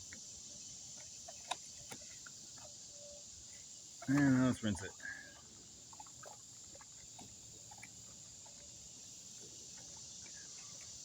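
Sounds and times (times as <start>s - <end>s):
crickets chirping: 0.0s - 11.0s
faint water splashes: 3.5s - 11.0s.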